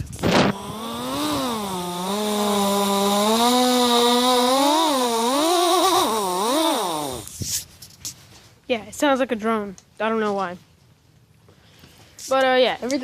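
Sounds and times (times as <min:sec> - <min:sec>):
short noisy burst: 0:00.3 - 0:07.4
person imitating a drone buzz: 0:00.4 - 0:07.3.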